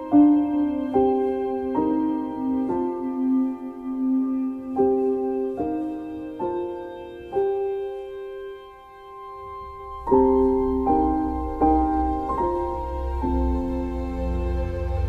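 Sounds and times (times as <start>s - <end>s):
slow gentle piano chords: 0.0s - 15.0s
low bass: 9.9s - 15.0s.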